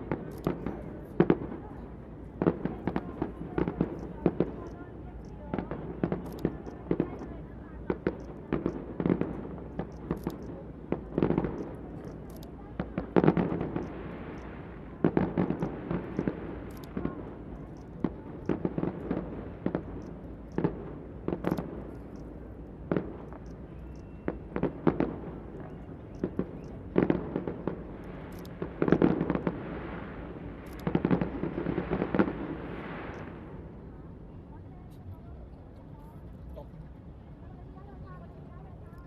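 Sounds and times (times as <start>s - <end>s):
fireworks bangs: 0.0s - 1.8s, 2.4s - 33.7s.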